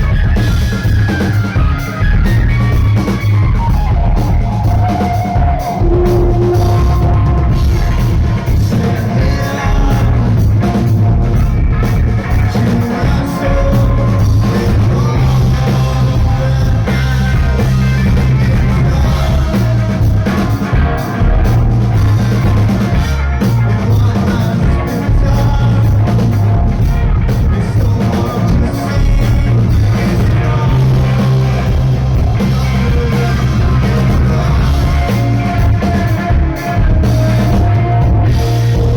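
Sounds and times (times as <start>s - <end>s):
drum kit beat: 0.0s - 38.9s
live rock band: 0.0s - 38.9s
person singing: 4.1s - 11.0s, 12.2s - 21.4s, 23.8s - 26.4s, 27.4s - 38.9s.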